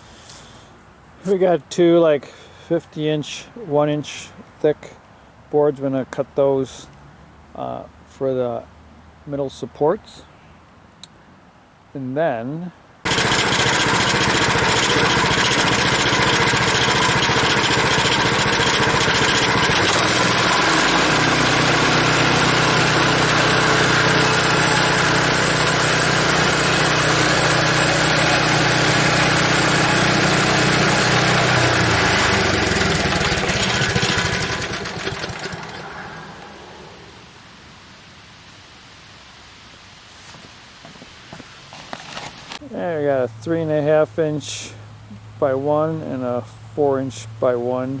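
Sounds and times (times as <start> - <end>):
saw cutting boards: 13.1 - 36.0
sawmill engine running: 13.1 - 37.0.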